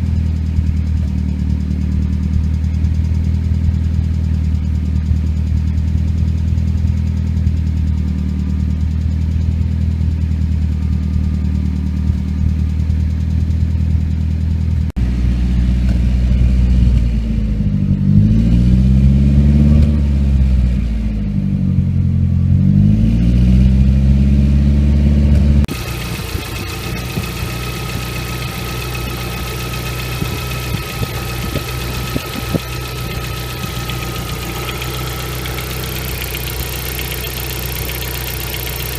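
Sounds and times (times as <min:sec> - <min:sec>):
engine ticking clatter: 0:00.0 - 0:18.1, 0:25.3 - 0:38.9
car engine idling and revving: 0:00.0 - 0:38.9.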